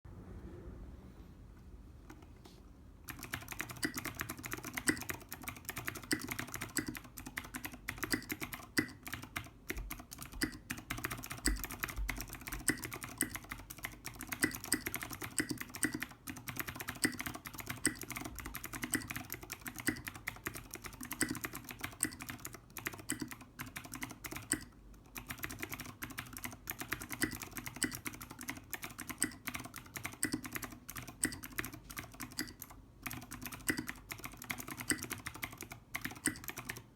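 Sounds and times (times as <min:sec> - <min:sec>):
fast typing on mechanical keyboard: 0:03.1 - 0:36.9.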